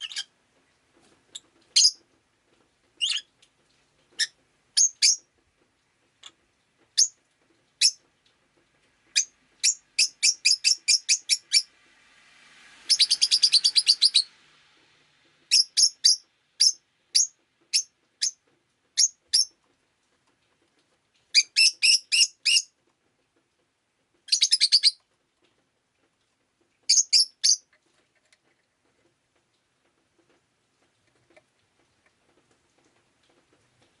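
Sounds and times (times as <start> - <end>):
bird high-pitched chirps: 0.0 - 0.3, 1.8 - 2.0, 3.0 - 3.3, 4.2 - 5.2, 9.2 - 11.7, 12.9 - 14.3, 15.5 - 18.4, 19.0 - 19.5, 21.3 - 22.7, 24.3 - 25.0, 26.9 - 27.6.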